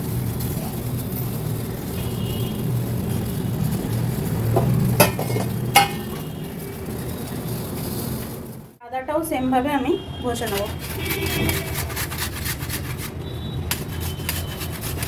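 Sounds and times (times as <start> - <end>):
water boiling in a pot: 0.0 - 8.4.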